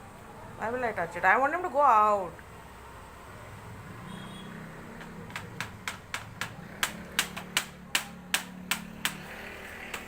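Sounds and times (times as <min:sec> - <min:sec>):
sharp taps: 0:04.9 - 0:10.0.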